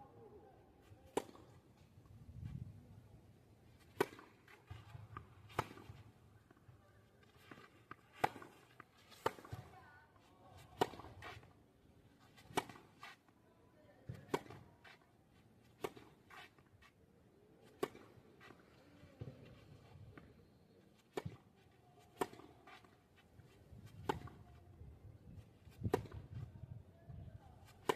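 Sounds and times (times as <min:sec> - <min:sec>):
racket striking tennis ball: 0:03.8 - 0:06.0, 0:07.5 - 0:09.7, 0:10.8 - 0:11.5, 0:12.3 - 0:13.2, 0:14.2 - 0:14.7, 0:15.7 - 0:16.6, 0:17.7 - 0:18.1, 0:22.0 - 0:23.0, 0:23.8 - 0:24.4, 0:25.7 - 0:26.3
tennis ball bouncing: 0:07.3 - 0:09.7, 0:10.7 - 0:11.4, 0:12.3 - 0:12.9, 0:14.1 - 0:14.7, 0:22.0 - 0:23.0, 0:23.8 - 0:24.5, 0:25.7 - 0:26.3.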